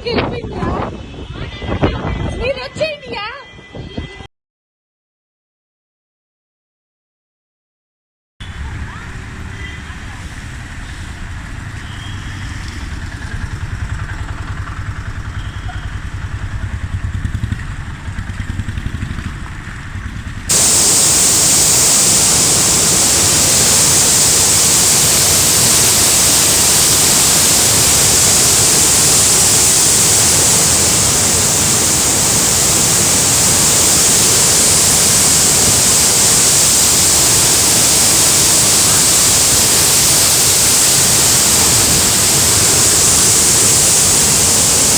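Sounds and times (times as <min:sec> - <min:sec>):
rushing water: 0:20.5 - 0:44.9.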